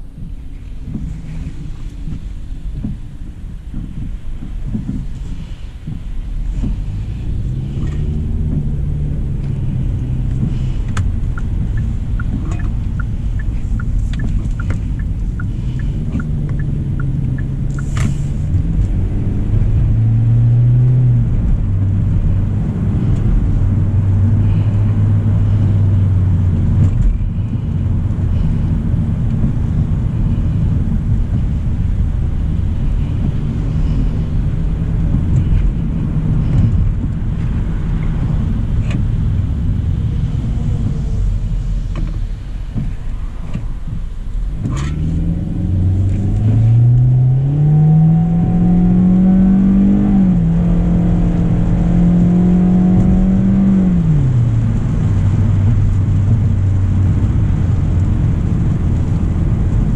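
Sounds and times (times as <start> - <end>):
car road and engine noise: 0.0 - 59.9
light evenly spaced ticks: 10.5 - 18.2.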